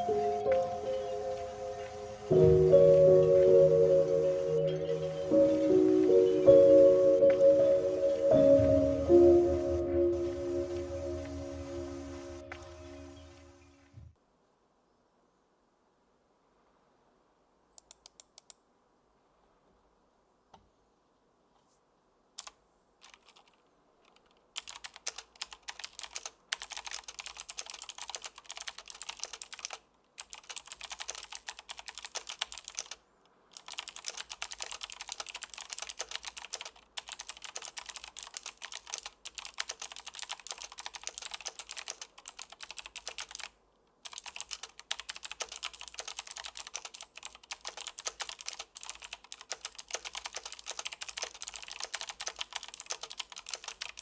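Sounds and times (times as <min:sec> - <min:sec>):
mechanical keyboard typing: 0:22.4 - 0:54.0.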